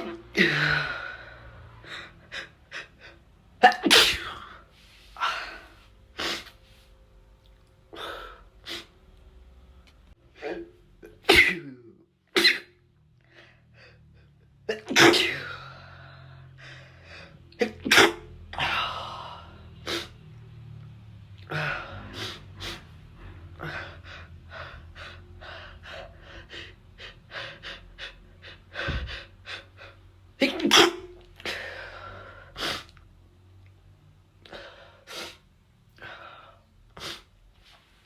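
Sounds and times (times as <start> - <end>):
person sneezing: 3.6 - 4.6, 10.4 - 12.8, 14.7 - 15.6, 17.6 - 18.8, 30.4 - 31.7.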